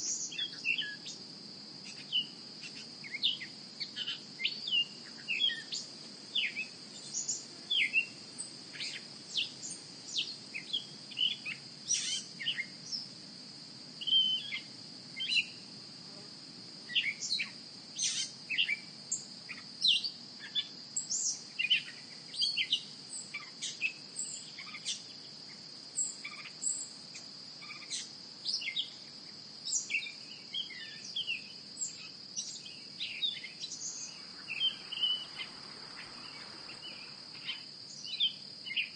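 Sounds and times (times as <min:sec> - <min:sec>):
high-pitched insect drone: 0:29.7 - 0:38.9
birds chirping: 0:32.5 - 0:38.9.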